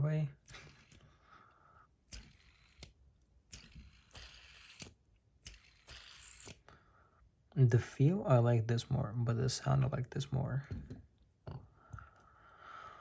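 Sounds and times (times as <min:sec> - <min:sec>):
fidget spinners whirring: 0:00.4 - 0:01.2, 0:02.0 - 0:06.7.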